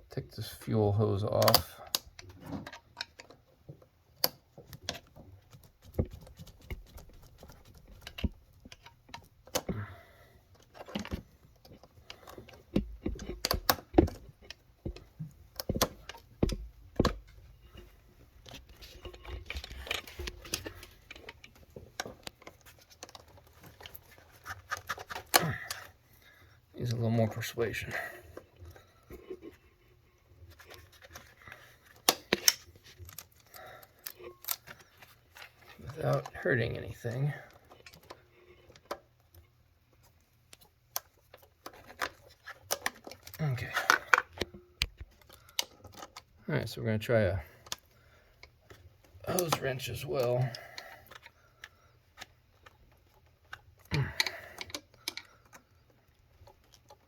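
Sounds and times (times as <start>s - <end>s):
knock and rattle: 12.7s - 17.9s.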